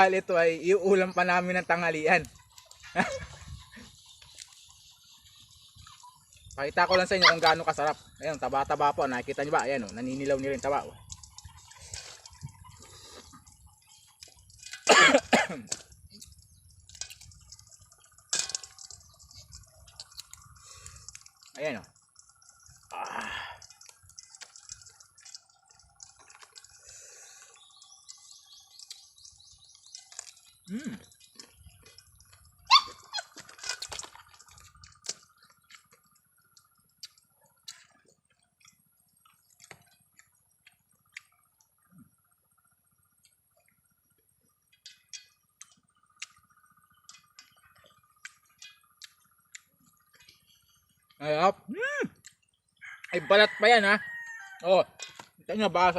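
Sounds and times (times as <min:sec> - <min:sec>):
wet chewing: 0:02.2 - 0:41.9, 0:44.6 - 0:51.2, 0:52.0 - 0:53.2
small wet mouth clicks: 0:33.4 - 0:38.0.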